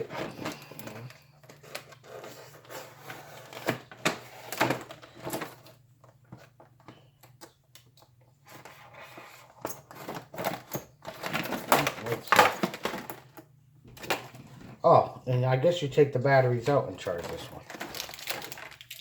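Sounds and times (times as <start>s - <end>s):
packaging rustling: 17.0s - 19.0s.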